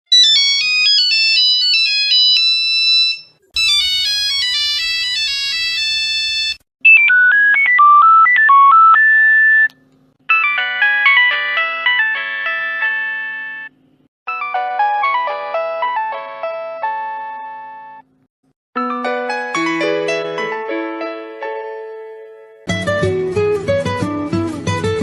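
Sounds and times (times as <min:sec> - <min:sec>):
phone ringtone melodies: 0:00.1 - 0:09.7, 0:10.3 - 0:18.0, 0:18.8 - 0:21.0.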